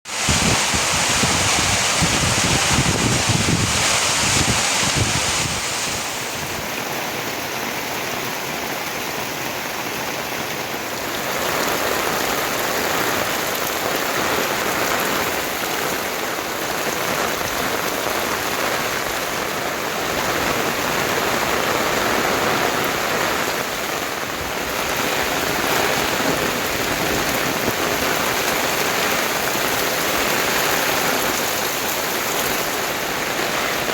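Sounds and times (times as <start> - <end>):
heavy rain falling: 0.0 - 33.9.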